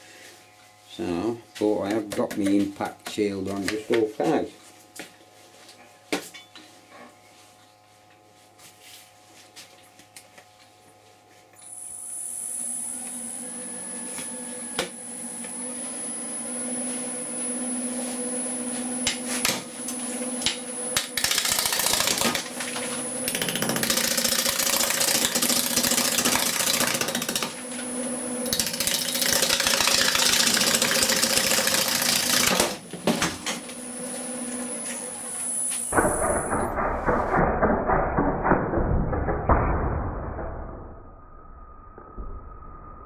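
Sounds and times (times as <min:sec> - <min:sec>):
wood lathe humming: 0:12.6 - 0:35.9
gouge scraping spinning wood: 0:21.2 - 0:27.6, 0:28.5 - 0:32.8.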